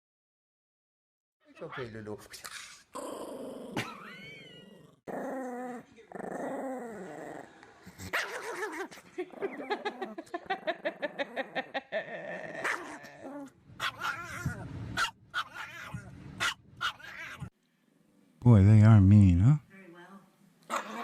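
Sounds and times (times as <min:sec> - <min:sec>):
small dog growling and snarling: 0:02.4 - 0:10.1, 0:11.0 - 0:17.5, 0:20.6 - 0:21.0
small dog yapping: 0:13.8 - 0:17.5.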